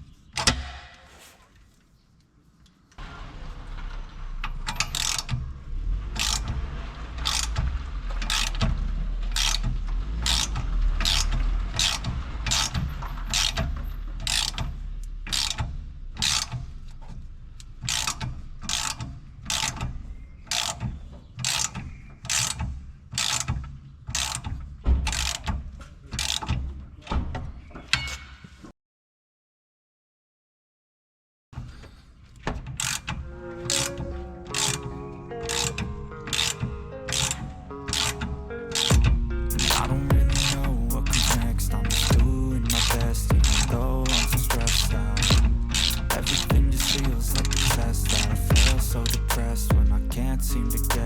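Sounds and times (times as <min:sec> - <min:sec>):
ratchet wrench clicking: 0:04.8 - 0:05.3, 0:06.2 - 0:06.6, 0:07.2 - 0:07.6, 0:08.2 - 0:08.7, 0:09.3 - 0:16.6, 0:17.6 - 0:19.8, 0:20.5 - 0:20.8, 0:21.4 - 0:22.6, 0:23.2 - 0:24.5, 0:26.2 - 0:26.5, 0:32.8 - 0:33.1, 0:34.6 - 0:34.8, 0:35.5 - 0:49.8, 0:50.4 - 0:51.0.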